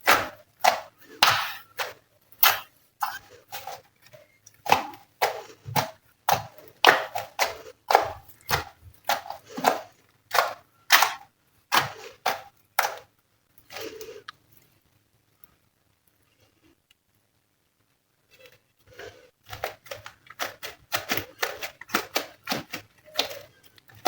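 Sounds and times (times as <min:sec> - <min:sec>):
sticky slime pops and crackles: 0:00.0 - 0:02.7.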